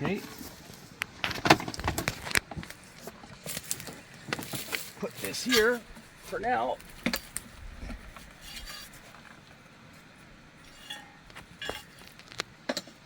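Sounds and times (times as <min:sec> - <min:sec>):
equipment parts clinking: 0:10.6 - 0:13.0.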